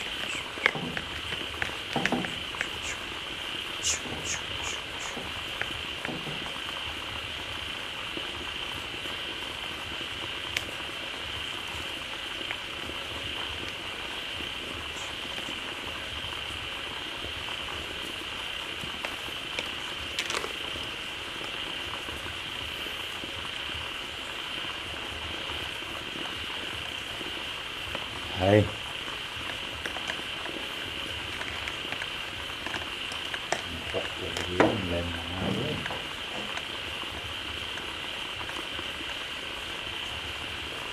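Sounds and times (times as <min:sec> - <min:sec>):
chorus of frogs calling: 0:00.0 - 0:06.8, 0:12.4 - 0:17.2, 0:28.4 - 0:39.4.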